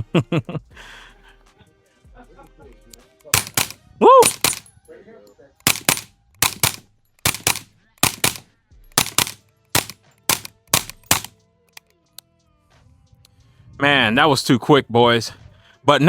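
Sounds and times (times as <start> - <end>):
suppressed gunshots: 3.4 - 4.7, 5.6 - 11.3.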